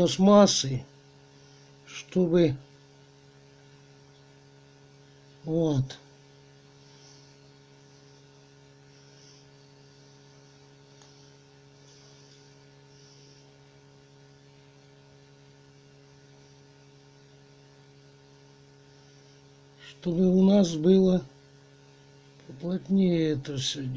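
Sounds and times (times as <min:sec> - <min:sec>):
electrical mains hum: 0:00.0 - 0:23.9
faint hiss: 0:04.8 - 0:22.7.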